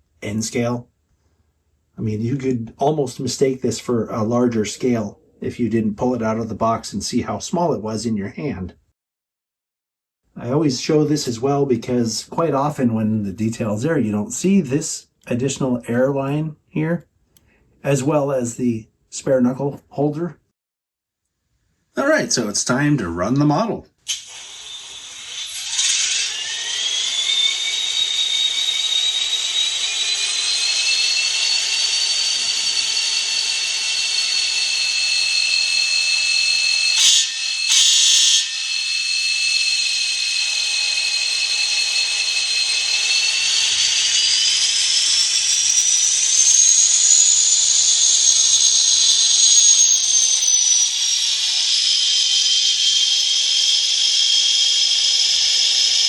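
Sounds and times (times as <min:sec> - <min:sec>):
model locomotive engine whine: 0:24.1 - 0:56.0.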